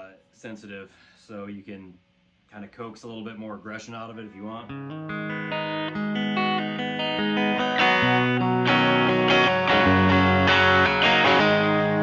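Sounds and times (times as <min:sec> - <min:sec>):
fuzz electric guitar: 0:04.7 - 0:12.0.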